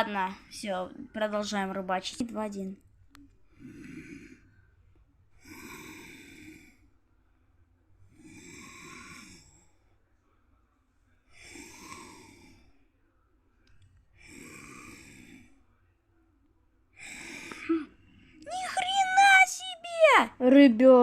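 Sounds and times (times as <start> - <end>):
person breathing: 3.4 - 4.7, 5.3 - 7.0, 11.3 - 12.9, 14.0 - 15.8, 16.9 - 18.5.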